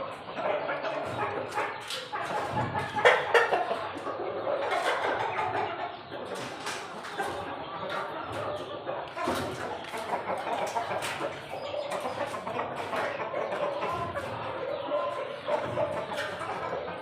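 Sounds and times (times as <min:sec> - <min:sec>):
chickens clucking: 0:00.0 - 0:17.0.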